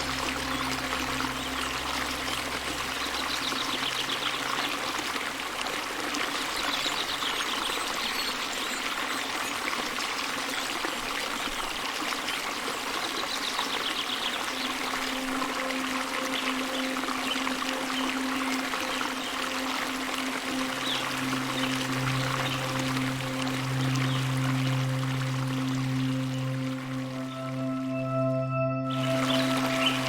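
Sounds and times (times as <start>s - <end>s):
low music drone: 0.0s - 5.6s, 14.4s - 30.0s
stream water flowing: 0.0s - 30.0s.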